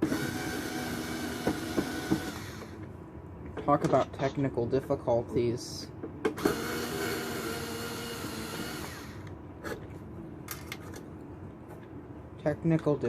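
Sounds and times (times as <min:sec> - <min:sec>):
electric screwdriver whirring: 0:00.0 - 0:02.8, 0:06.4 - 0:09.3.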